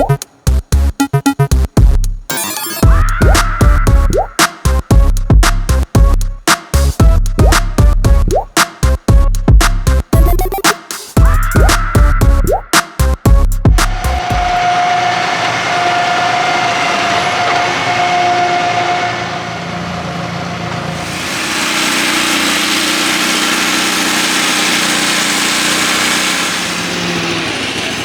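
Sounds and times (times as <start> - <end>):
machinery rushing noise: 20.6 - 28.0.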